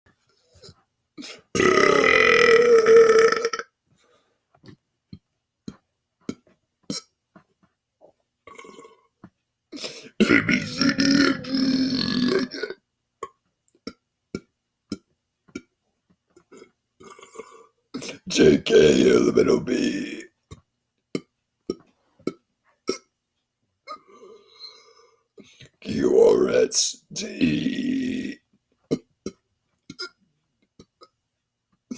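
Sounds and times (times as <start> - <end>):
man belching: 1.5 - 3.7, 8.5 - 9.0, 10.0 - 12.8, 16.6 - 20.3, 25.8 - 30.2
mouth clicks and gulps: 4.6 - 7.1, 8.5 - 15.7, 20.5 - 23.1, 28.9 - 31.2.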